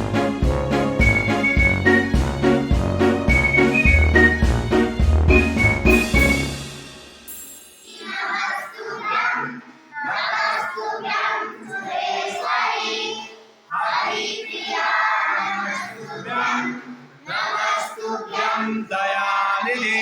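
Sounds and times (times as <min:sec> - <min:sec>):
children singing together: 0:07.9 - 0:20.0.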